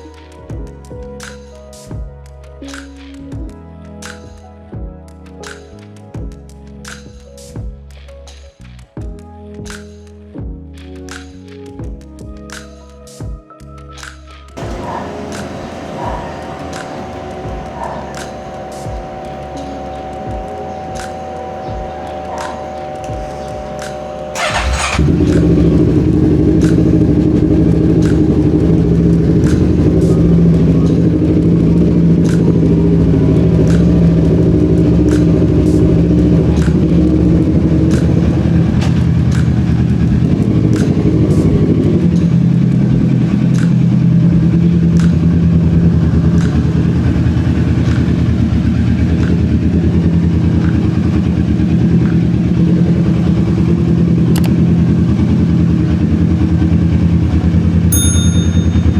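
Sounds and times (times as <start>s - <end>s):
motorcycle engine running steadily: 14.6s - 58.9s.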